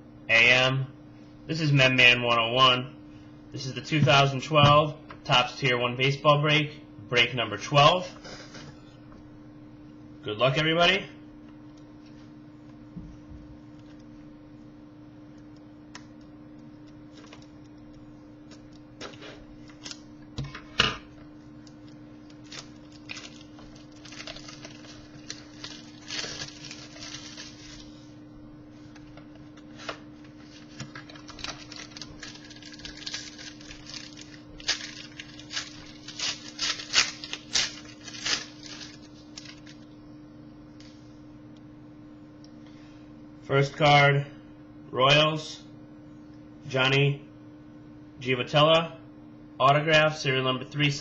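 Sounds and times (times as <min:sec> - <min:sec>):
steady low hum: 0:00.0 - 0:51.0
wrapper tearing and crinkling: 0:22.3 - 0:28.0, 0:30.5 - 0:39.8.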